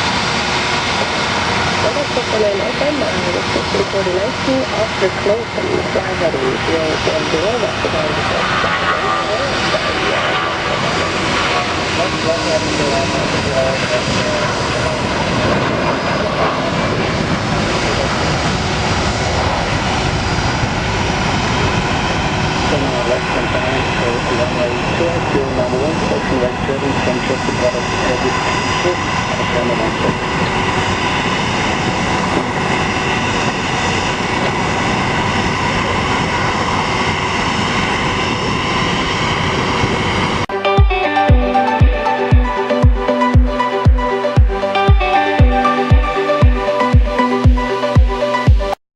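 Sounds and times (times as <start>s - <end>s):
jet engines roaring: 0.0s - 48.8s
electronic dance music: 40.5s - 48.8s.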